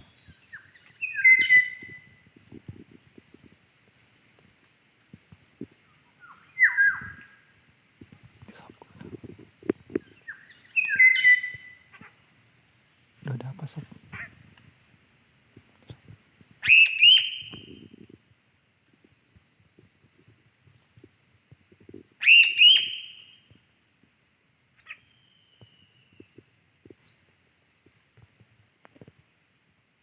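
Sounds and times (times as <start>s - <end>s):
bird calling: 0.0s - 2.1s, 10.0s - 12.2s, 16.6s - 17.7s, 22.2s - 23.4s, 24.8s - 25.9s
faint bird chirps: 0.0s - 2.3s, 5.8s - 7.6s, 9.9s - 12.3s, 15.8s - 18.1s, 22.2s - 23.6s, 24.7s - 27.4s.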